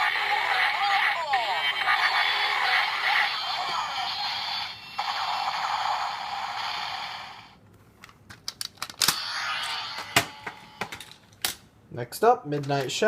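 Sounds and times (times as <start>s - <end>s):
tinny electronic toy sound effect: 0.0s - 7.6s, 9.1s - 11.1s.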